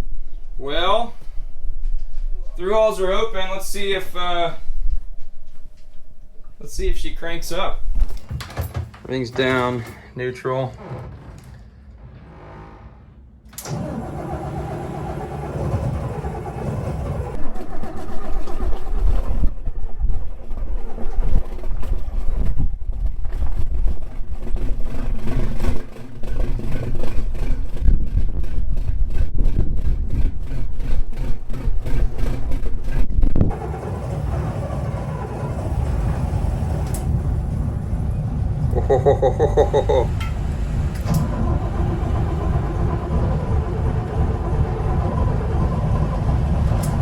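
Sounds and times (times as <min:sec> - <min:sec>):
diesel engine knocking: 0:13.8 - 0:19.0, 0:31.8 - 0:47.0.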